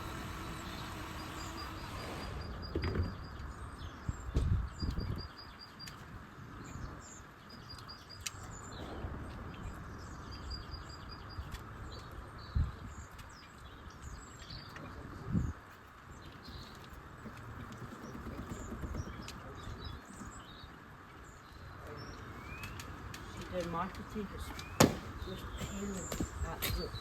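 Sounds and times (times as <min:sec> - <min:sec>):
steady whirring noise: 0:00.0 - 0:13.3, 0:14.8 - 0:27.0
small birds chirping: 0:00.0 - 0:27.0
dull knocks: 0:24.7 - 0:26.8.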